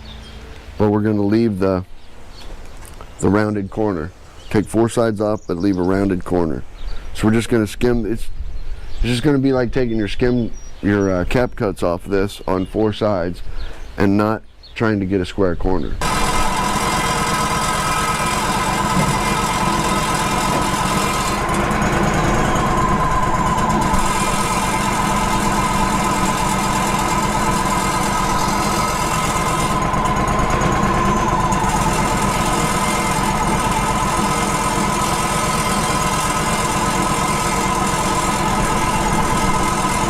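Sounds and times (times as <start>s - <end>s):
band sawmill engine running: 16.0s - 40.0s
high whine: 16.0s - 40.0s.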